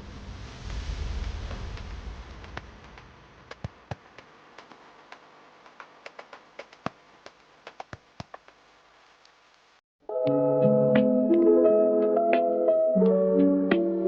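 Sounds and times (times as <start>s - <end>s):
sharp clicks and crackles: 1.7s - 8.6s.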